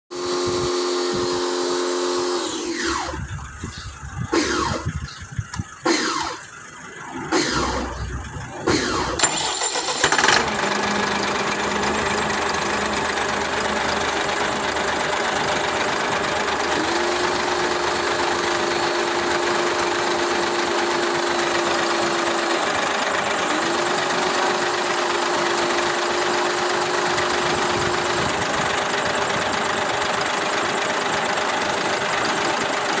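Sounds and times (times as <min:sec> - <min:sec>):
steady whine: 0:00.2 - 0:25.2
diesel truck engine: 0:00.2 - 0:33.0.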